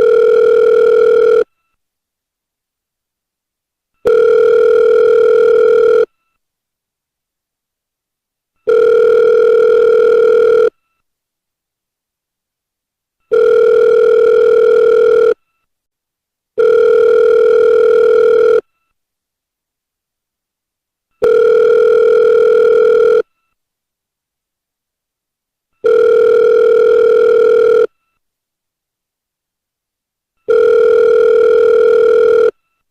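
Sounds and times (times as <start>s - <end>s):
telephone ringback tone: 0.0s - 1.5s, 4.0s - 6.1s, 8.6s - 10.8s, 13.3s - 15.4s, 16.6s - 18.7s, 21.2s - 23.3s, 25.8s - 28.0s, 30.5s - 32.6s.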